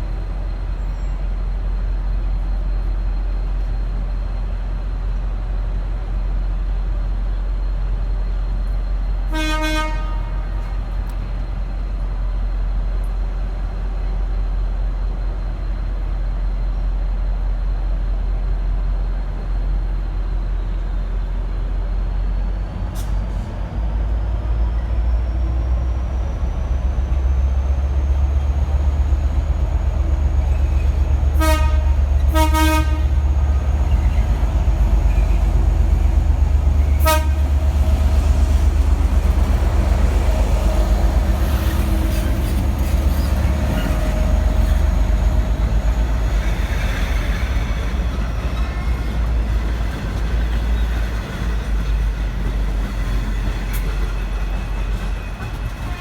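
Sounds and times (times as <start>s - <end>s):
diesel locomotive engine rumbling: 0.0s - 56.0s
locomotive horn toots: 9.3s - 10.8s, 30.9s - 35.6s, 36.6s - 49.5s.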